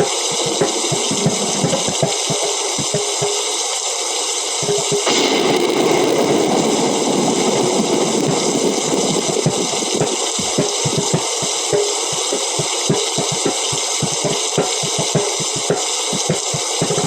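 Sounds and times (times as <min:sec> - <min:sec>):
steady rain: 0:00.0 - 0:04.4, 0:05.0 - 0:14.7
bongo drum strokes: 0:04.9 - 0:17.0
thunder rumbling: 0:05.1 - 0:11.6.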